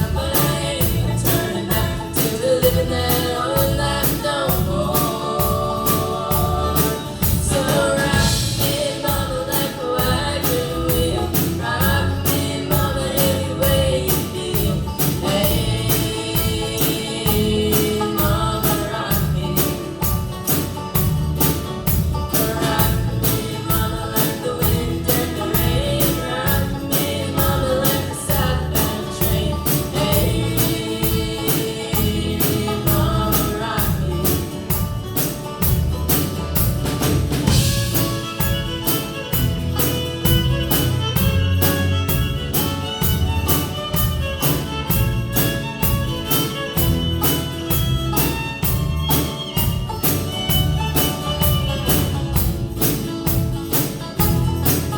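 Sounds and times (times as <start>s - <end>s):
person singing: 0.0s - 20.6s, 22.2s - 34.9s
band playing country music: 0.0s - 54.9s
steady drum beat: 0.0s - 54.9s.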